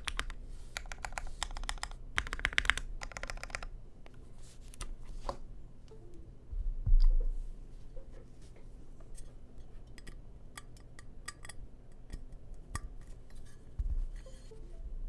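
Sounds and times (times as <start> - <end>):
mechanical keyboard typing: 0.0 - 3.7.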